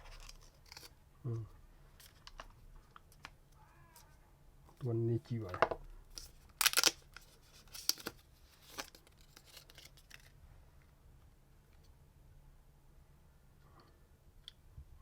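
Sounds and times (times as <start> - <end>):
packaging rustling and scraping: 0.0 - 0.9, 6.1 - 10.4.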